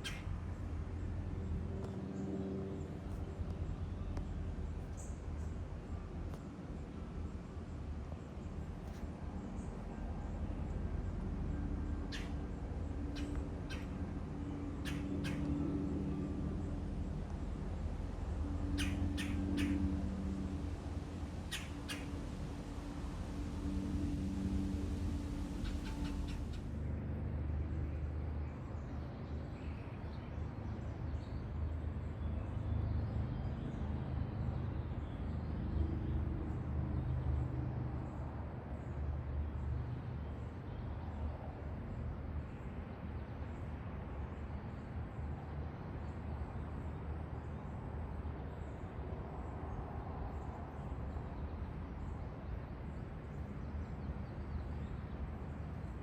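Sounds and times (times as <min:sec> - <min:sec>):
steady low rumble: 0:00.0 - 0:28.8
faint high bird chirps: 0:18.7 - 0:19.9.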